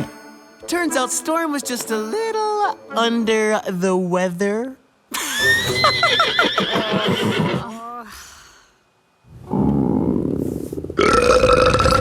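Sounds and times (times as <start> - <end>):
cartoon unicorn whinnying: 5.4 - 7.6.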